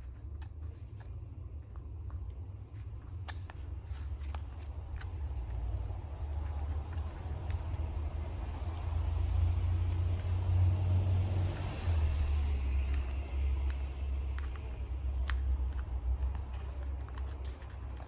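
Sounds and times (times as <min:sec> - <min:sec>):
low steady rumble: 0:00.0 - 0:18.0
paper packaging rustling: 0:11.2 - 0:18.0.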